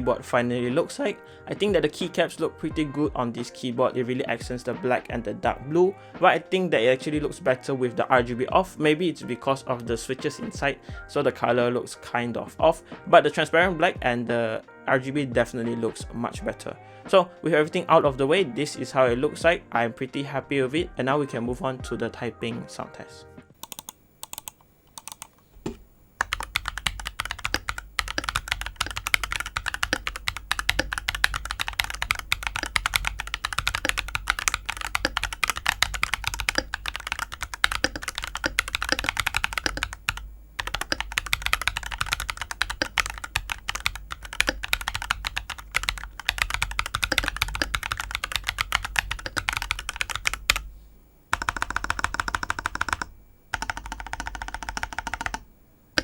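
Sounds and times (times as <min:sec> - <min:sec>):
mechanical keyboard typing: 0:23.6 - 0:50.7, 0:51.3 - 0:56.0.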